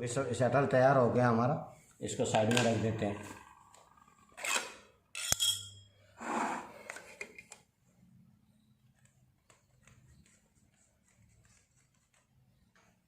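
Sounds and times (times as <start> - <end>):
metallic clink: 5.2 - 5.9.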